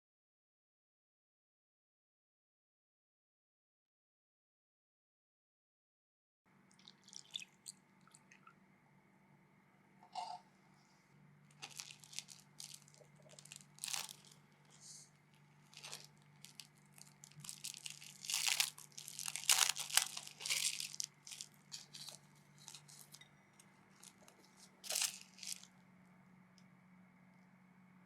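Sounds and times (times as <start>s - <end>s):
faint steady hum: 6.5s - 28.0s
food preparation rustling and scraping: 10.2s - 25.7s.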